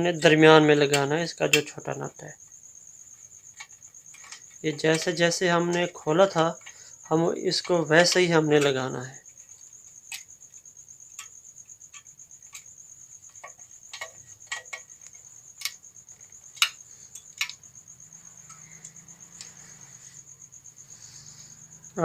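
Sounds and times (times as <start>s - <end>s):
cricket trilling: 0.0s - 22.0s
clicks and taps of metal parts: 0.8s - 1.8s, 13.3s - 17.6s.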